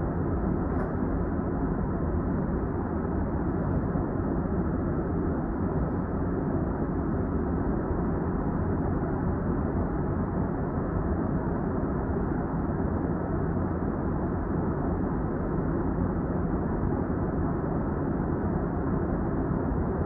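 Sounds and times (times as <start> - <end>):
light rail car interior noise: 0.0 - 1.2.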